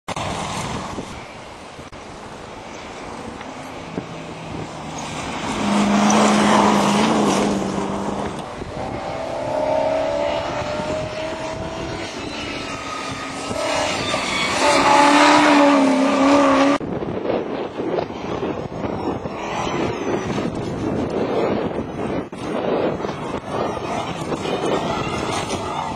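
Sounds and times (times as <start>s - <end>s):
off-road engines revving: 2.7s - 16.8s.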